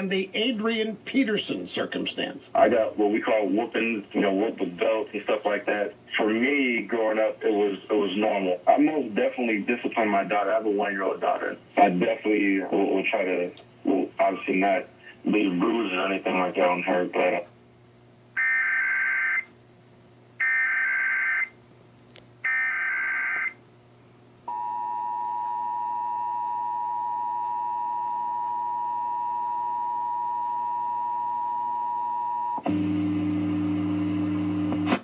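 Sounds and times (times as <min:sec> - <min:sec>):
low steady hum: 0:00.0 - 0:35.0
two-tone alert signal: 0:24.5 - 0:32.6.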